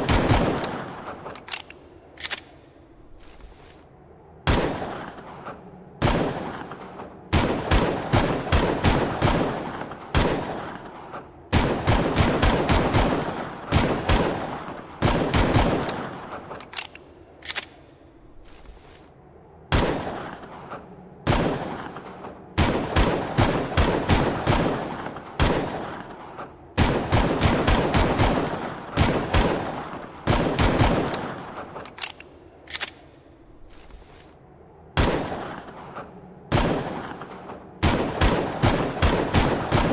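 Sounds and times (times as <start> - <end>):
pistol shots echoing: 26.8 - 31.8, 36.5 - 39.9.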